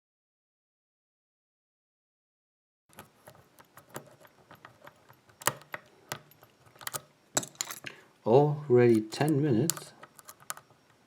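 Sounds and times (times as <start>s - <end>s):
lock pick clicking in a lock: 2.9s - 7.9s, 8.9s - 11.0s.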